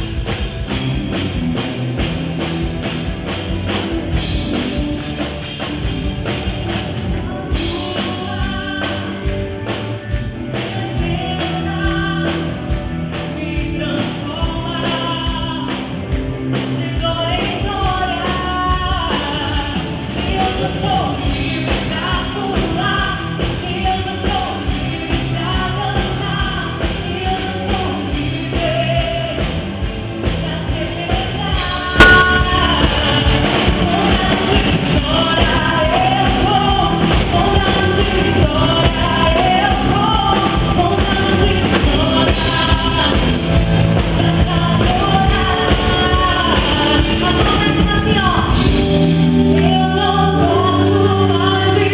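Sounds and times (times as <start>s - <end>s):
rock song with singing: 0.0s - 51.9s
sharp knock: 32.0s - 33.0s.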